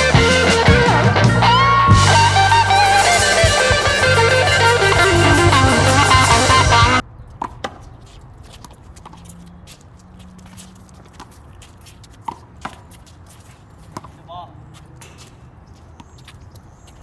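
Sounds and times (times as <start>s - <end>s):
rock music with electric guitar: 0.0s - 7.0s.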